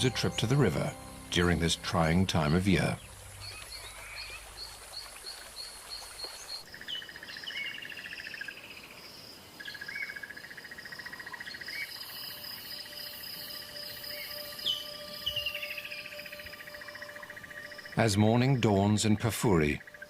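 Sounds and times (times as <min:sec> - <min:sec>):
birds calling in pulsed trills: 0:00.0 - 0:08.5, 0:11.2 - 0:20.0
high-pitched insect trilling: 0:11.0 - 0:18.9.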